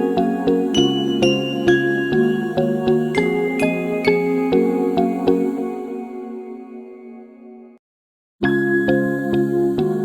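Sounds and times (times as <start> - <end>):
bell-like notes ringing: 0.7 - 5.1.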